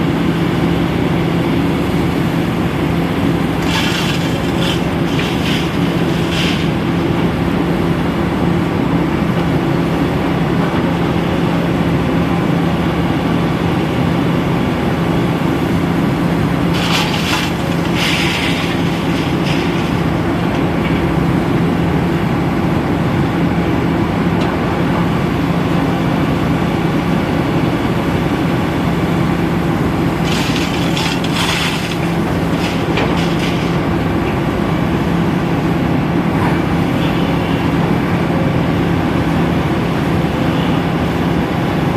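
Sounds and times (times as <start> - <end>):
excavator diesel engine drone: 0.0 - 41.9
higher-pitched clattering: 3.6 - 6.8, 16.7 - 20.4, 30.2 - 34.2.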